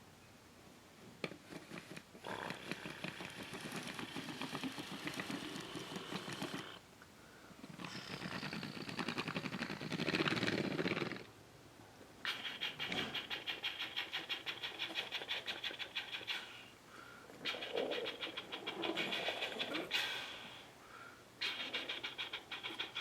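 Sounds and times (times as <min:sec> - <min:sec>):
toy vehicle rattling engine: 0:02.6 - 0:06.8.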